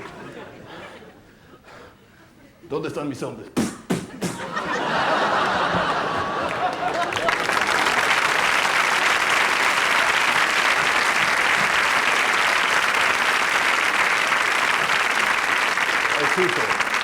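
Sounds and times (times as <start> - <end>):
audience applauding: 4.3 - 17.0.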